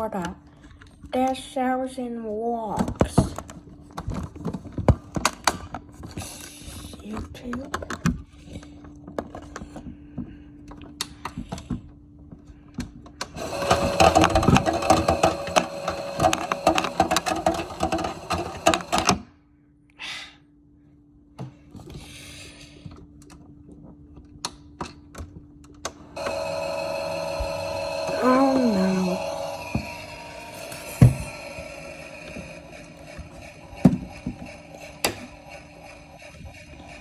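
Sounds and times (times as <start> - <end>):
toy washing machine motor hum: 11.2 - 19.2, 25.8 - 37.0.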